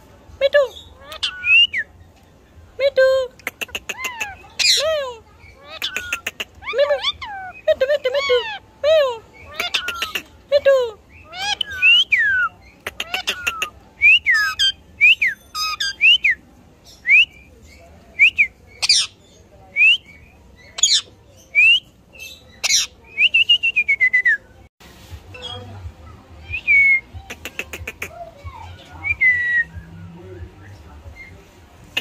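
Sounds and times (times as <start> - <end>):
parrot squawks: 0.7 - 1.8, 3.4 - 8.6, 9.4 - 10.3, 11.2 - 16.2, 18.8 - 19.2, 22.2 - 23.0.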